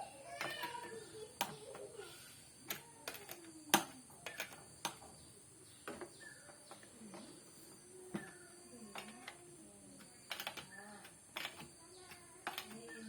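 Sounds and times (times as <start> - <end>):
sharp clicks and taps: 2.7 - 5.1, 10.0 - 13.0.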